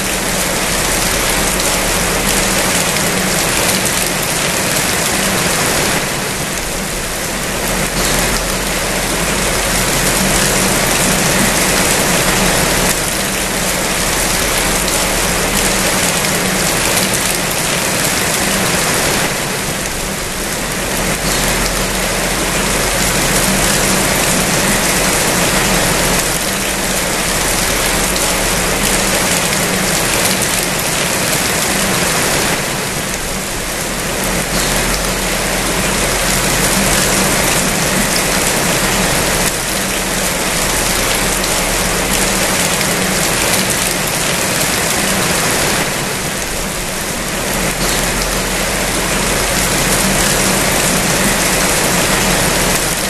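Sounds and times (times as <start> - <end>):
rain falling: 0.0 - 53.0.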